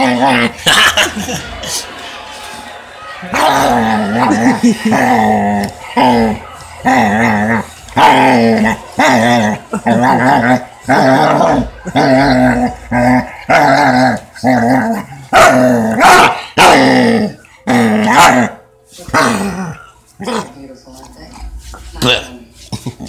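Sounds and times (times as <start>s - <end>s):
dog growling and grumbling: 0.0s - 0.8s, 3.4s - 18.6s, 19.2s - 20.6s.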